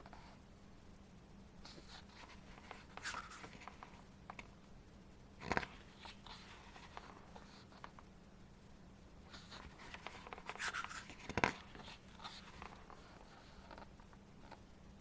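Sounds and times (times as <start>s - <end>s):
page flipping: 1.7s - 4.5s, 5.4s - 8.0s, 9.3s - 14.6s
paper pages rustling: 1.7s - 4.5s, 5.4s - 8.0s, 9.3s - 14.6s.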